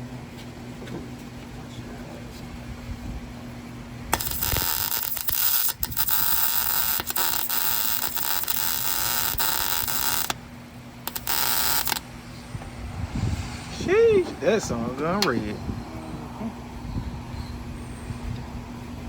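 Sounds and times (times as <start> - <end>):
welding arc crackling and hissing: 4.1 - 10.4, 11.0 - 12.0.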